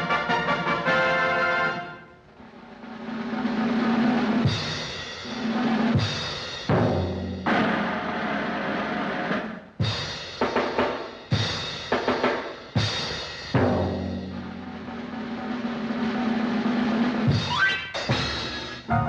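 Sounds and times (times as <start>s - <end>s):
boogie-woogie swing band music: 0.0s - 1.9s, 17.2s - 19.0s
loud drum hits: 3.4s - 18.9s.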